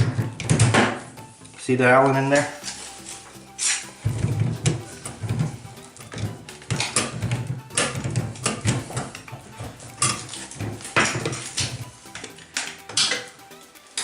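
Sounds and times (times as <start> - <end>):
metal tools clanking: 4.5 - 13.4.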